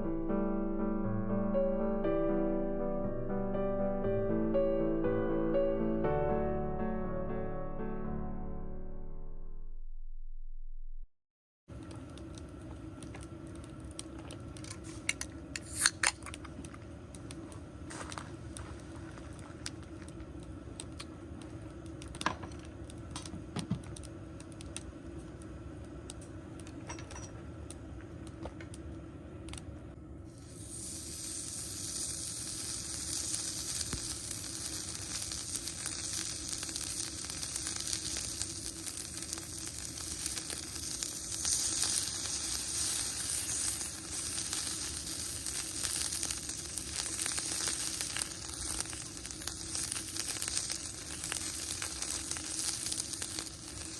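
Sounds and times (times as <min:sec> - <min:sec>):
food sizzling in a hot pan: 0:30.3 - 0:53.9.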